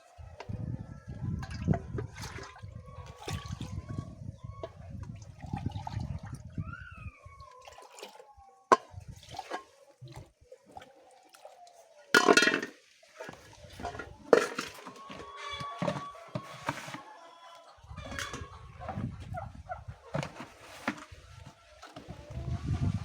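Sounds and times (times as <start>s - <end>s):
chickens calling: 0.0s - 5.3s, 6.0s - 8.7s, 13.2s - 23.0s.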